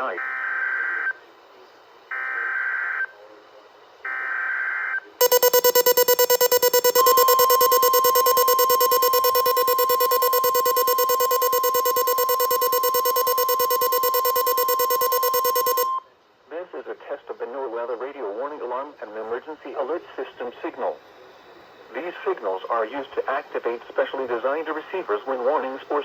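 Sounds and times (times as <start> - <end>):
buzzy data tones: 5.2 - 16.0
steady high beep: 5.2 - 16.0.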